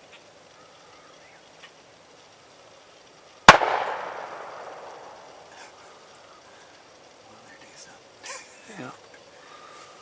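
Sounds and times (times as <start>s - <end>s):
shotgun shot with echo: 3.5s - 5.5s.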